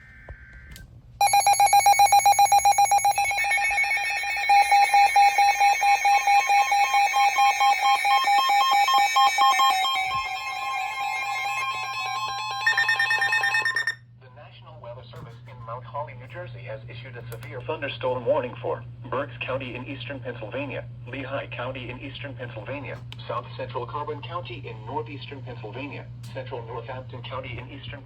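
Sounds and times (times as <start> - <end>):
buzzy data tones: 1.2 - 14.0
pulsing electronic alarm: 1.2 - 14.0.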